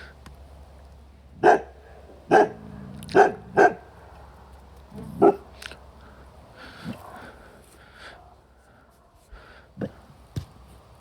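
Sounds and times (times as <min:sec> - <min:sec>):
dog barking: 0:01.4 - 0:03.9, 0:05.0 - 0:05.5.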